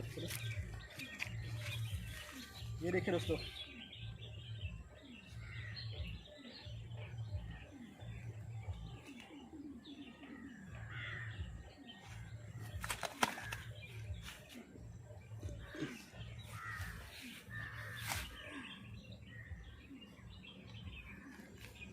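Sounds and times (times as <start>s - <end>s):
low repeating pulse: 0.0s - 12.8s
birds chirping: 0.0s - 21.9s
crows cawing: 10.8s - 11.6s, 15.6s - 18.7s.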